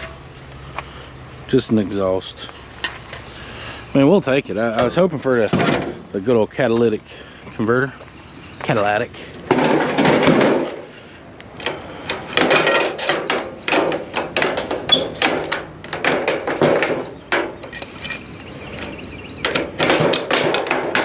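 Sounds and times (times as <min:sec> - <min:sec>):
scrap metal knocking and scraping: 0:00.0 - 0:00.4, 0:09.2 - 0:21.0.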